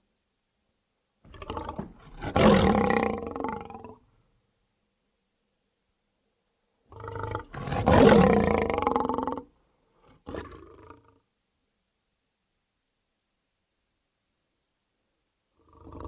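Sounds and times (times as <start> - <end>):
big cat growl: 1.3 - 4.0, 6.9 - 9.5, 10.1 - 11.2, 15.6 - 16.0
big cat roar: 1.3 - 4.0, 6.9 - 9.5, 10.1 - 11.2.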